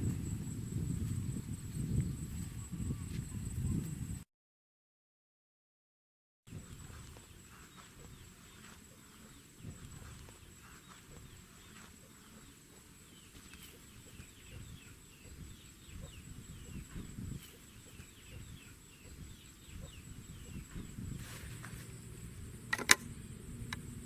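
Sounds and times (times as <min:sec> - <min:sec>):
small birds chirping: 0:06.5 - 0:24.0.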